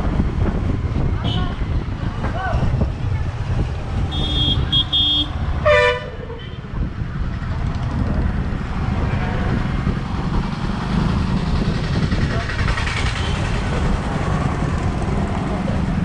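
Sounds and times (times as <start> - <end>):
traffic rumble: 0.0 - 16.0
high-pitched horn beeps: 4.1 - 6.1.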